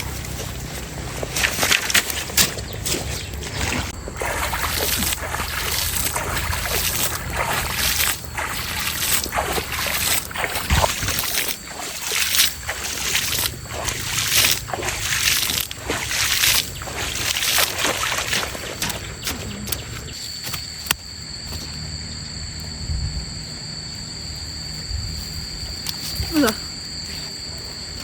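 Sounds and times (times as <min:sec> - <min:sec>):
water splashing in a stream: 0:03.5 - 0:19.4.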